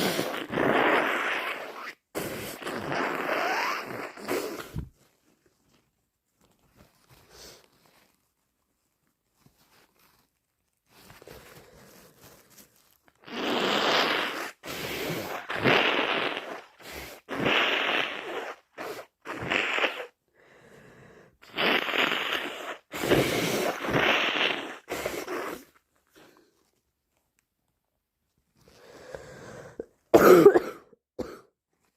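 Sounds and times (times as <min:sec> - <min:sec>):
person blowing nose: 0:00.0 - 0:04.9, 0:13.2 - 0:26.5.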